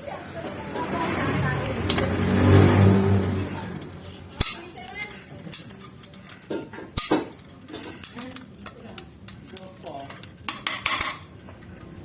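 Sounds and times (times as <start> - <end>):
metal stove parts clinking: 3.7 - 11.3.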